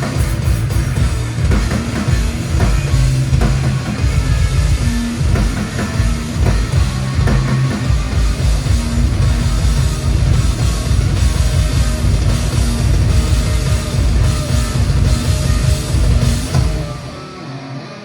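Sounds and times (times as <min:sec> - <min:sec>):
busy drum kit: 0:00.0 - 0:17.6
bass guitar: 0:00.0 - 0:18.0
distorted electric guitar: 0:00.0 - 0:18.0.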